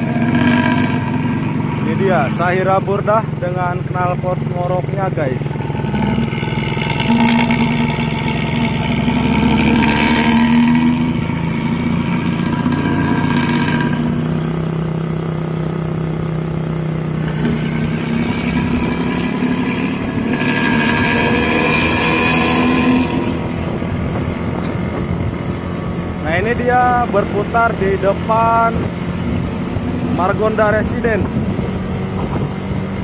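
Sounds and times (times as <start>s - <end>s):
diesel bus engine snoring exhaust: 0.0s - 3.1s, 4.7s - 26.2s.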